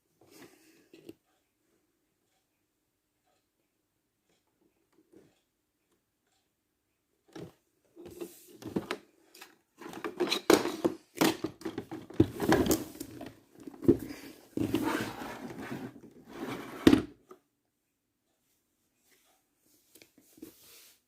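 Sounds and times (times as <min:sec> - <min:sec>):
handling knocks and scrapes: 0:09.8 - 0:17.1.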